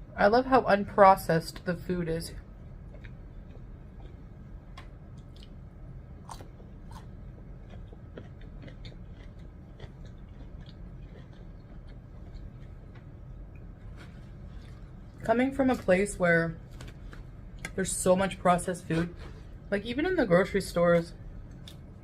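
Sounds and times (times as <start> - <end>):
steady low hum: 0.0 - 22.0
person chewing food: 2.4 - 15.8.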